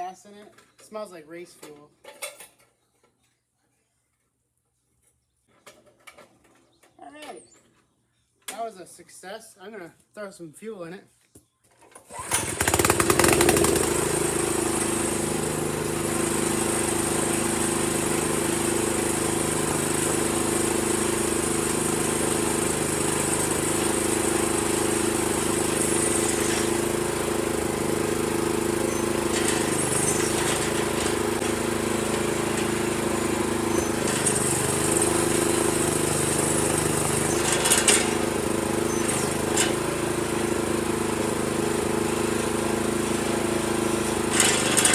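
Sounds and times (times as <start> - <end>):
small engine starting and running: 11.9 - 44.9.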